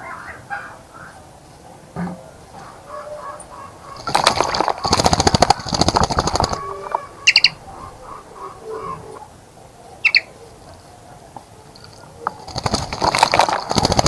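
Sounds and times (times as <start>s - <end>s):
faint chirping: 2.7s - 14.0s
bird splashing in water: 3.9s - 7.7s, 11.8s - 14.0s
short high bird calls: 6.6s - 9.3s, 10.0s - 10.4s.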